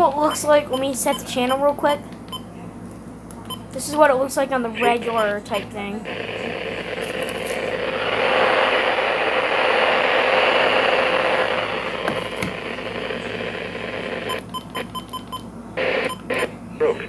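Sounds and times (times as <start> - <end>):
radio static hiss: 4.0 - 17.0.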